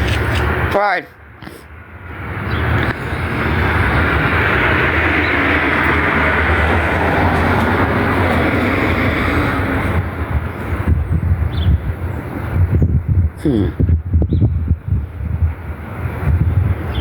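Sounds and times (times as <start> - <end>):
vehicle passing with rumble: 1.8 - 13.4.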